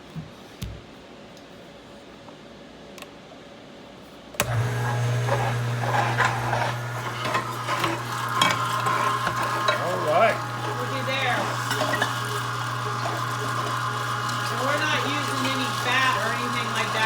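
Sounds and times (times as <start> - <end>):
electric meat grinder humming: 4.4 - 17.0.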